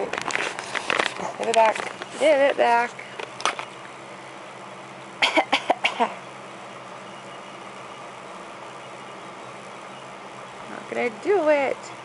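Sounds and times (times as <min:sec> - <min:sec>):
steady low hum: 0:00.0 - 0:12.0
baby coughing: 0:05.2 - 0:06.2.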